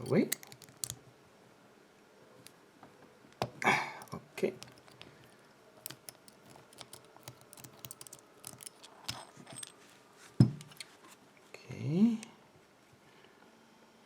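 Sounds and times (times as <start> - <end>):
padlock metal clicks and scrapes: 0.0 - 1.0, 4.0 - 9.8.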